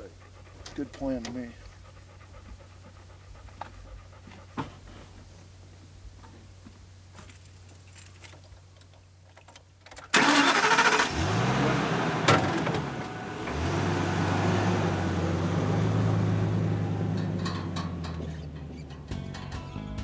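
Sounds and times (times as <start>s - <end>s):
vehicle engine cranking and starting: 9.8s - 19.8s
engine revving: 10.2s - 17.5s.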